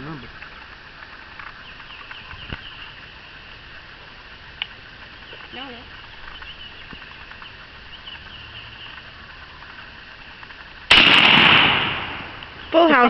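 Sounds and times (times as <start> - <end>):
shotgun blast: 10.9 - 12.6.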